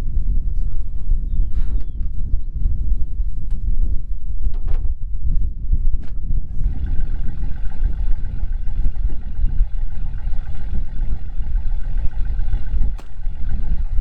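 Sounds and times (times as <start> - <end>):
vehicle engine rumble: 5.9 - 14.0.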